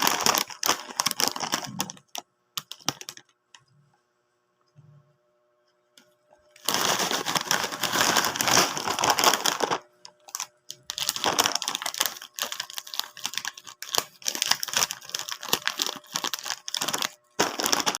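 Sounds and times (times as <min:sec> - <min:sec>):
chips crunching: 0:00.0 - 0:03.2, 0:06.6 - 0:18.0.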